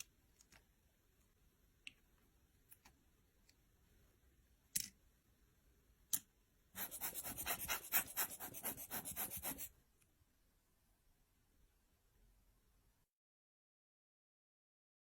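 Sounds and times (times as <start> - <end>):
quick scraping strokes: 6.8 - 9.7.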